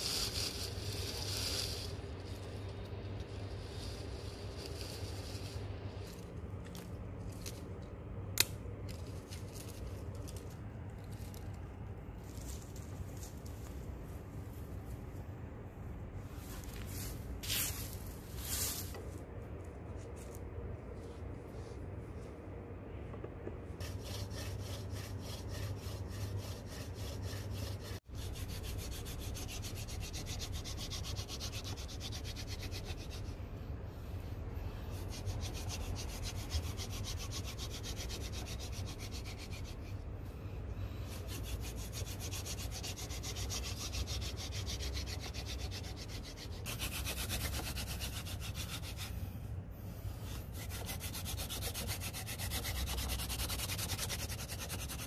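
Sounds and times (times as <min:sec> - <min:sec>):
wood rubbing on wood: 0:41.1 - 0:49.2, 0:50.3 - 0:55.0.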